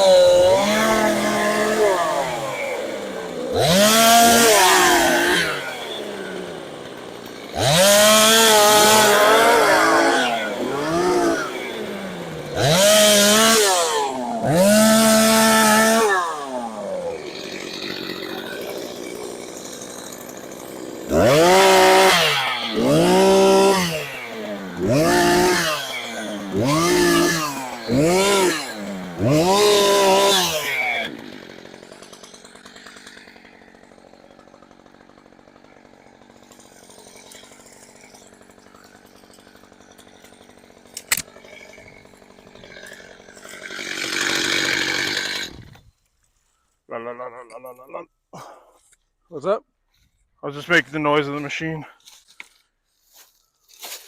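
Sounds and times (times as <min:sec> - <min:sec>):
chainsaw revving: 0:00.0 - 0:45.9.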